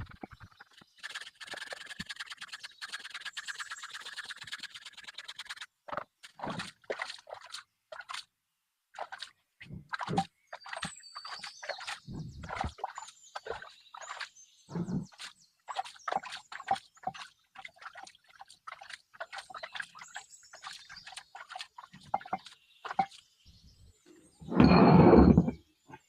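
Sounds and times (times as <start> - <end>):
rasping scrapes: 24.4 - 25.6.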